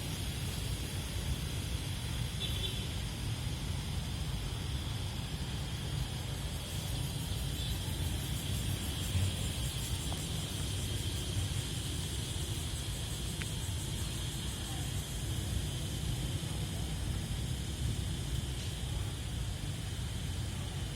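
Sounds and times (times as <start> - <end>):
faint high hiss: 0.0 - 20.9
traffic rumble: 0.0 - 20.9.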